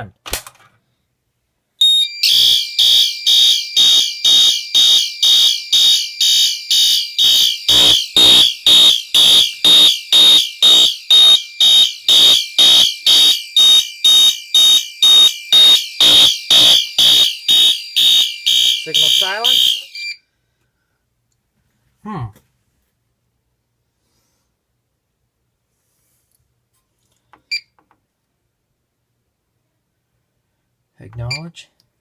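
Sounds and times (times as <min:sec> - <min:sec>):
fire alarm horns blasting: 0:01.8 - 0:20.2.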